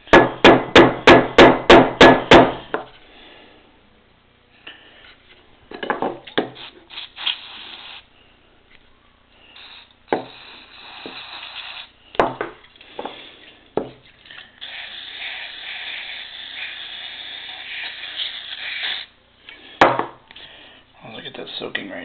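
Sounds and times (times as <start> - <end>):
aerosol spray hissing: 6.4 - 8.0, 9.5 - 12.0, 14.6 - 19.1.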